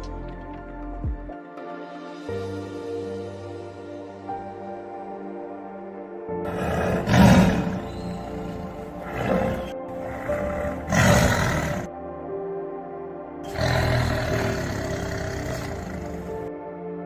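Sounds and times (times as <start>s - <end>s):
background music: 0.0s - 17.0s
large animal roaring: 6.5s - 11.9s, 13.5s - 16.5s.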